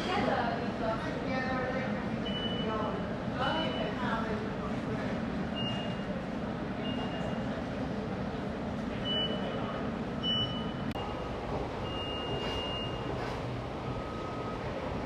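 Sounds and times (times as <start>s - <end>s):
faint lower beeps: 2.2s - 2.8s, 5.6s - 6.0s, 9.0s - 13.1s, 13.8s - 14.7s.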